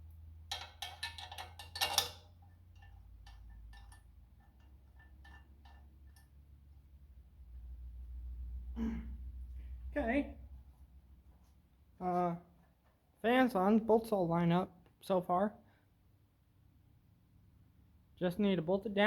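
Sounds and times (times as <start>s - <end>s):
metal wrench and bolts clinking: 0.5s - 6.4s.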